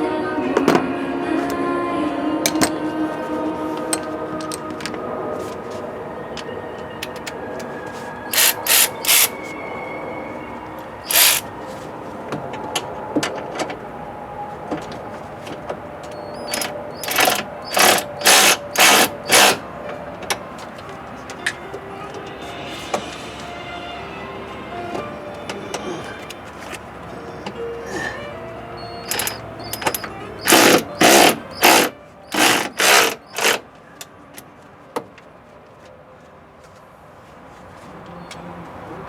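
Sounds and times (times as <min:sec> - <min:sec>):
ratchet wrench strokes: 0:08.3 - 0:09.4, 0:11.1 - 0:11.5, 0:16.4 - 0:19.6, 0:29.0 - 0:33.6.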